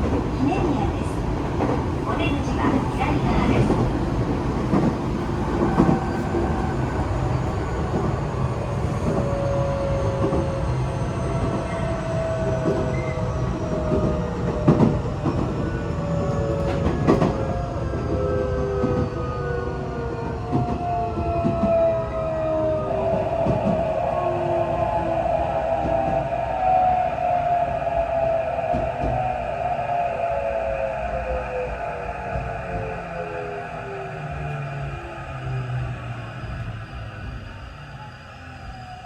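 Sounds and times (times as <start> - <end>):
train wheels rumbling on track: 0.0 - 29.4.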